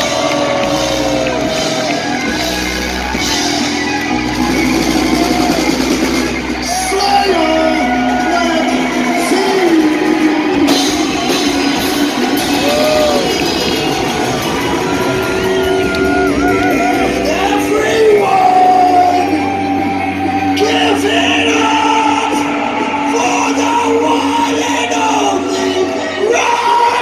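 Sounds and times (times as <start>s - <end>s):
live heavy metal band: 0.0s - 27.0s
person singing and shouting: 6.6s - 27.0s.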